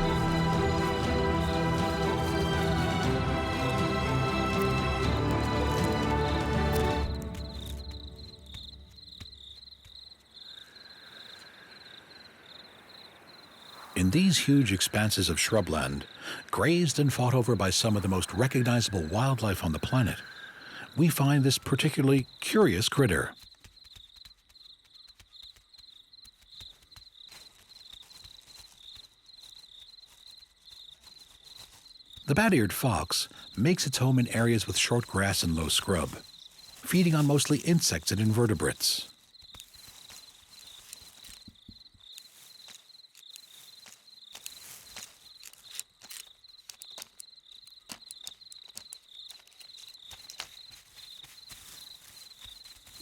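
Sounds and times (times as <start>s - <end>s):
clicks and crackles in dry ground cover: 0.0s - 53.0s
insects chirping: 0.0s - 53.0s
soft clicks and rustles: 39.4s - 53.0s.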